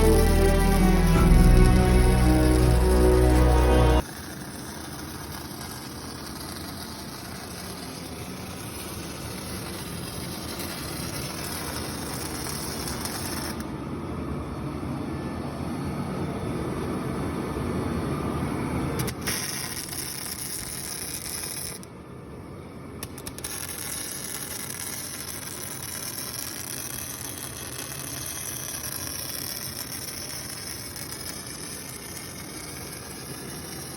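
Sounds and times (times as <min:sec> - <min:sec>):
excavator engine running: 0:00.0 - 0:04.0.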